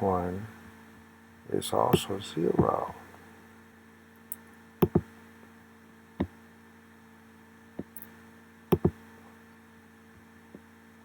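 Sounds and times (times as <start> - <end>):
steady electrical hum: 0.0 - 11.0
computer mouse clicks: 4.3 - 5.1, 8.7 - 9.0.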